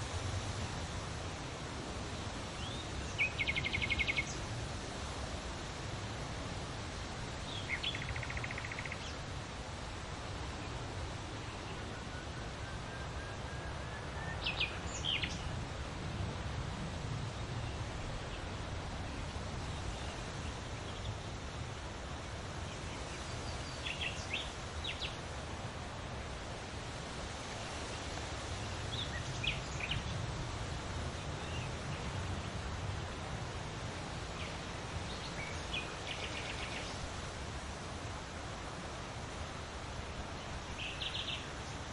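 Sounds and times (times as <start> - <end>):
wind rustling leaves: 0.0 - 41.9
bird chirps: 7.7 - 9.0.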